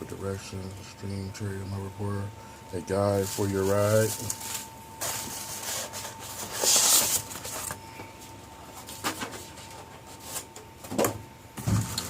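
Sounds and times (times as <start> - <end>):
packaging and paper rustling: 3.0 - 8.1.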